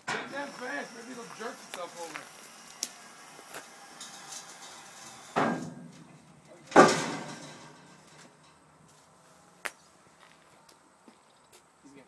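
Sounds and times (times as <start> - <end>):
heavy bangs with rattle: 4.0 - 6.1, 6.7 - 8.5.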